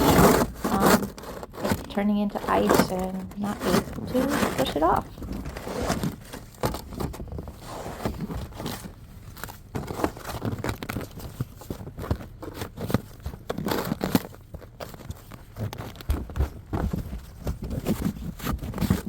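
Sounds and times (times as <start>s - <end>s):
snow crunching and scraping: 0.0s - 6.4s.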